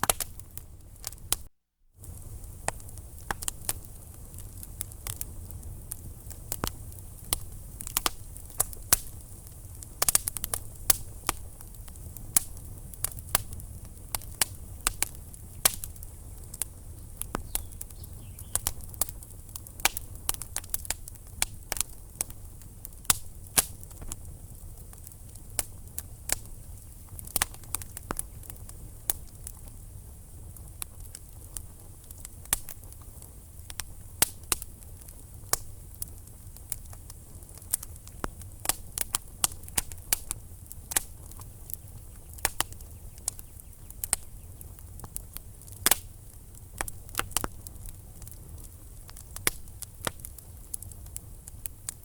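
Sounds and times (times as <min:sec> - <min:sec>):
sharp pops and snaps: 0:00.0 - 0:24.3, 0:24.9 - 0:29.8, 0:30.6 - 0:52.0
low fire rumble: 0:00.0 - 0:52.0
wood fire crackling: 0:00.0 - 0:52.0.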